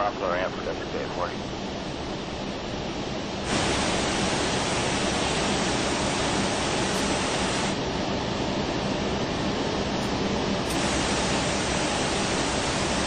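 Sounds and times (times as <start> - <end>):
faint low hum: 0.0 - 13.0
aircraft cockpit rushing noise: 3.5 - 7.9, 9.2 - 13.0.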